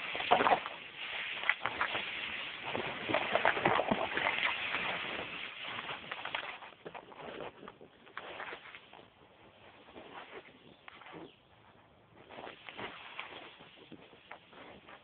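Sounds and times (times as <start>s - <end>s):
footsteps crackling through dry leaves: 0.0s - 7.6s.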